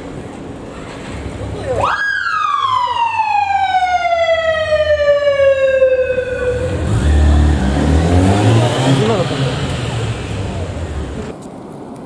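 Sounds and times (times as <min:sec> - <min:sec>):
police siren wail: 0:01.8 - 0:11.3
low motorcycle engine rumble: 0:02.6 - 0:11.3.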